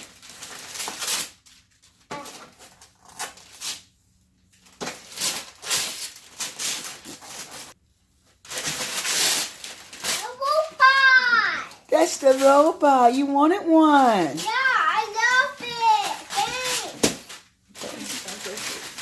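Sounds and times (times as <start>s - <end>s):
wrapping paper rustling and tearing: 0.0s - 13.0s, 14.0s - 19.0s.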